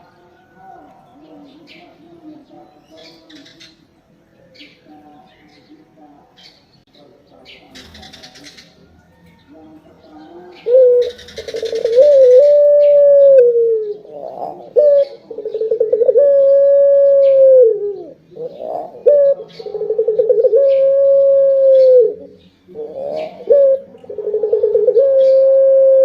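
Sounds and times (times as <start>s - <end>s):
dove cooing: 10.1s - 26.0s
breathy bird sound: 10.6s - 16.3s.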